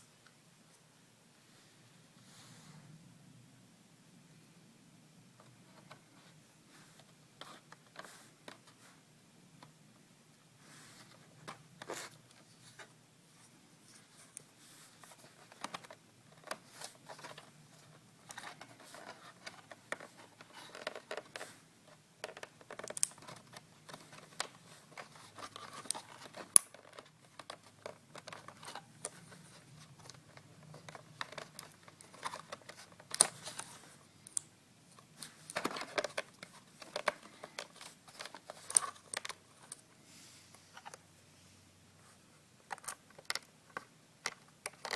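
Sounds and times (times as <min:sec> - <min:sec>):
hands handling hard drive parts: 0:14.0 - 0:34.4, 0:35.0 - 0:39.9, 0:42.6 - 0:44.9.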